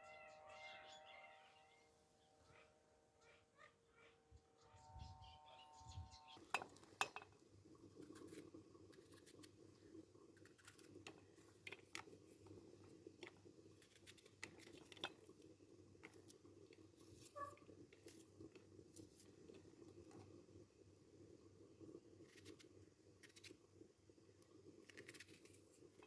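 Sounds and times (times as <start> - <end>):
faint low hum: 0.0 - 7.3.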